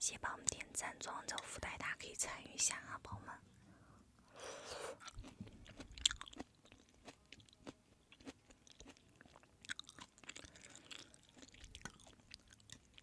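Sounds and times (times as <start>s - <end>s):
chewing food: 4.9s - 13.0s.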